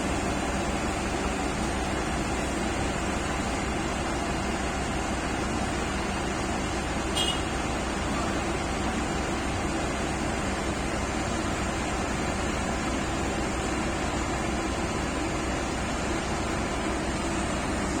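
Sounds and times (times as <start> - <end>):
heavy diesel engine running: 0.0 - 18.0.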